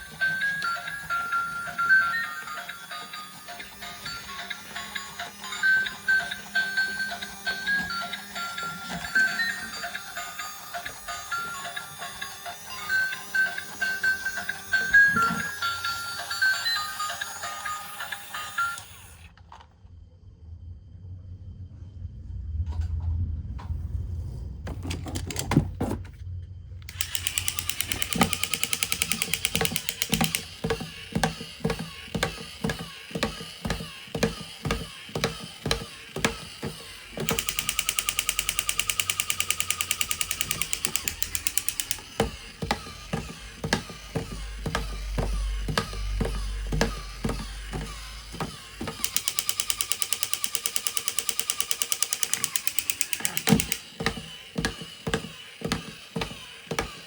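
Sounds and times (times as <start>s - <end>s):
plastic toy vehicles knocking: 26.9s - 57.0s
rapid even clicking: 26.9s - 57.0s.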